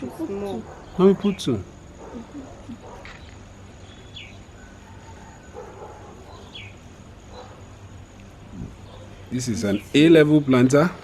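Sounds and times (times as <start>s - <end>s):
faint insect drone: 0.0s - 11.0s
low background noise: 0.0s - 11.0s.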